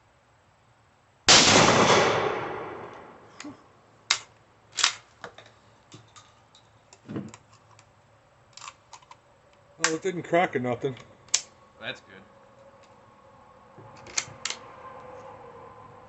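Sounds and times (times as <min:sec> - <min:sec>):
shotgun blast echoing: 0:01.3 - 0:03.3.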